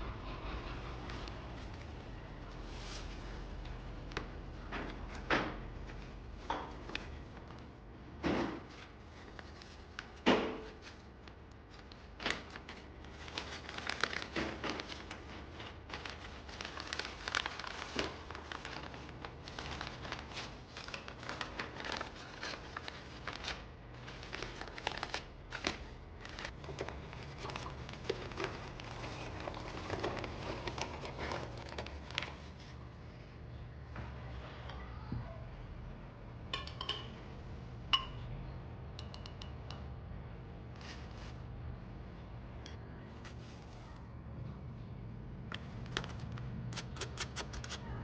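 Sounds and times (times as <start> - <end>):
packaging crinkling: 11.8 - 32.5.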